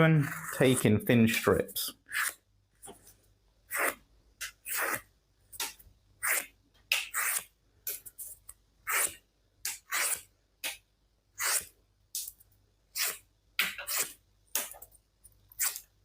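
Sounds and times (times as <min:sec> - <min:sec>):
knife slicing leather: 0:04.6 - 0:05.1.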